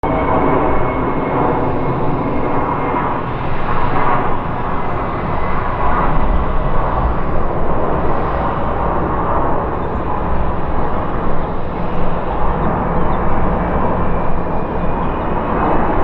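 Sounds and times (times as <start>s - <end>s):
faint high engine whine: 0.0s - 16.0s
jet engines roaring: 0.0s - 16.0s.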